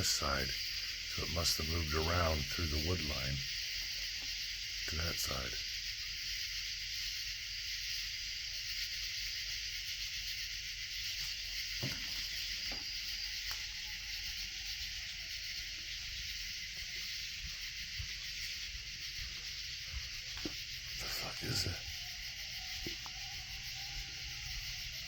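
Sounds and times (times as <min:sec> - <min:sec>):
steady high hiss: 0:00.0 - 0:25.0
distant animal howl: 0:11.8 - 0:25.0.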